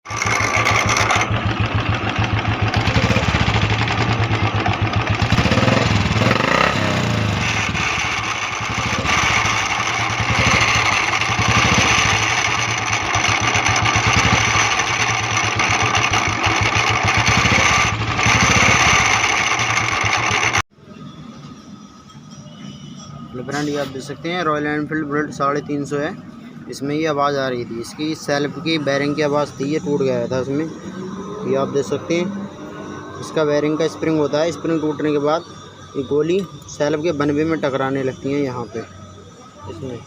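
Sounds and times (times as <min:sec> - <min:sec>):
motorcycle engine running: 0:00.0 - 0:20.6
starter clutch rasping rattle: 0:00.0 - 0:20.6.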